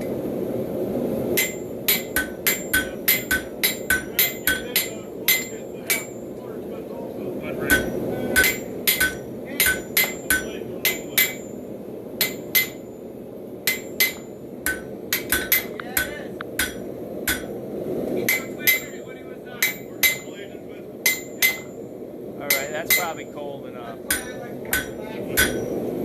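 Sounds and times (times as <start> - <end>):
low rushing noise: 0.0 - 26.0
hammer striking metal on anvil: 1.4 - 6.2, 7.6 - 11.6, 12.2 - 13.0, 13.6 - 17.6, 18.2 - 19.0, 19.6 - 20.4, 21.0 - 21.8, 22.5 - 23.2, 24.1 - 25.8.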